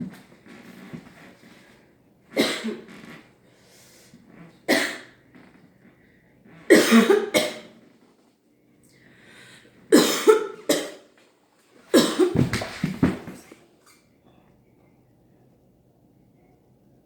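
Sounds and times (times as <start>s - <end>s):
person coughing hard: 2.4s - 2.9s, 4.7s - 5.1s, 6.7s - 7.8s, 9.9s - 11.1s, 11.9s - 12.7s.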